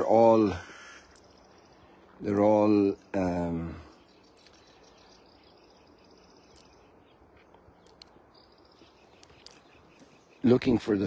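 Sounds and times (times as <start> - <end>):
faint outdoor ambience: 0.0 - 11.0
faint clicks: 7.4 - 8.2, 9.2 - 10.1.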